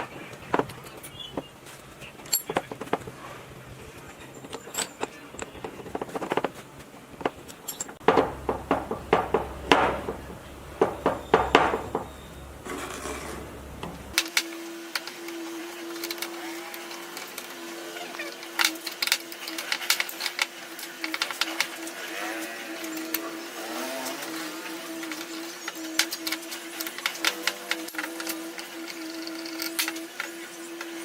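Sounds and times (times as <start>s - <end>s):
metal tools clinking: 0.0s - 3.1s, 3.9s - 14.2s
low hum: 0.0s - 14.2s.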